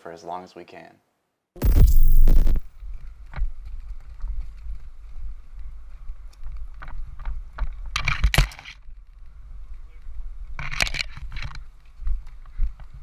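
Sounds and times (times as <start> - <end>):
wind rumble on microphone: 2.8 - 13.0.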